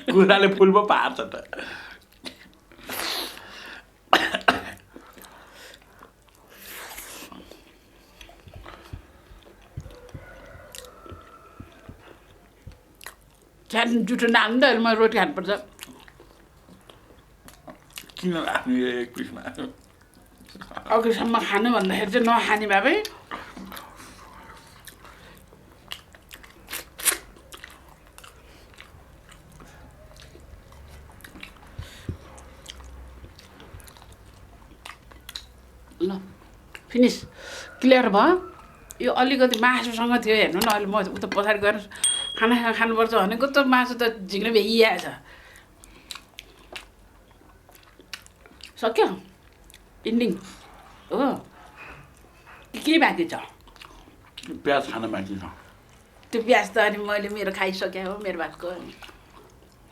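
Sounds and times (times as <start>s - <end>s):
mouth clicks and smacks: 4.6s - 13.7s, 23.0s - 36.9s
chewing soft food: 4.8s - 13.8s, 15.6s - 37.8s, 44.9s - 56.4s, 57.8s - 59.9s.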